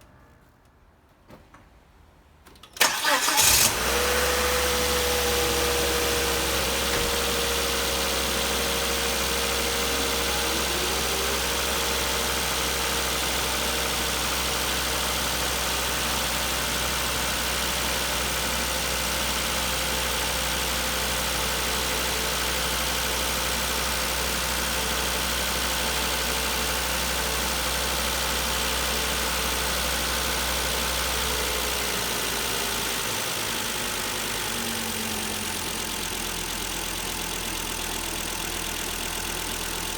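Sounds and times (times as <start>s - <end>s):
faint engine whine: 2.8s - 13.8s
car engine idling: 2.8s - 39.9s.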